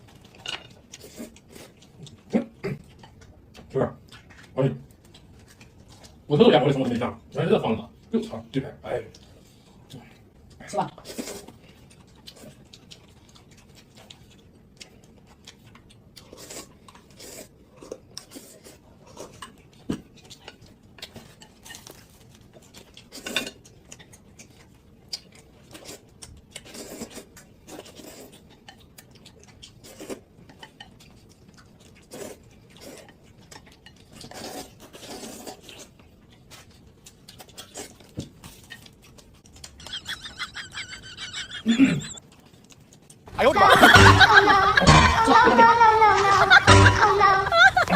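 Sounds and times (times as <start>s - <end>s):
slurping noodles: 34.2s - 35.9s.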